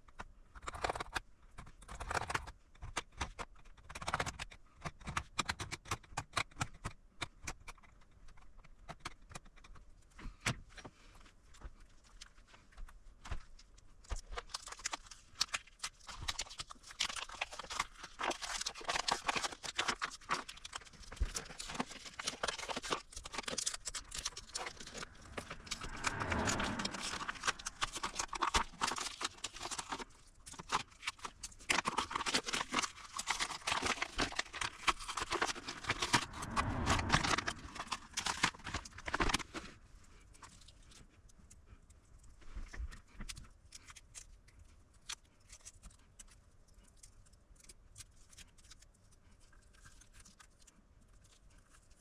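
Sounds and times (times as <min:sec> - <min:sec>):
clicking and tapping of small parts: 0:00.0 - 0:25.0.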